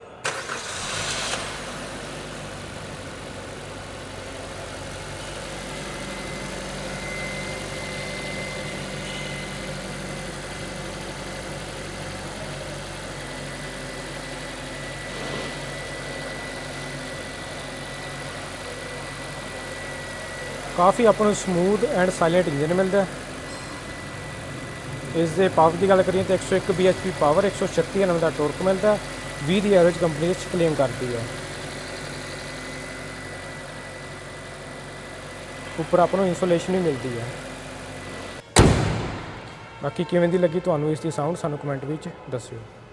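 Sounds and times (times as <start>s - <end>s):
car engine idling: 0.0s - 40.1s
faint high-pitched tone: 6.1s - 9.8s.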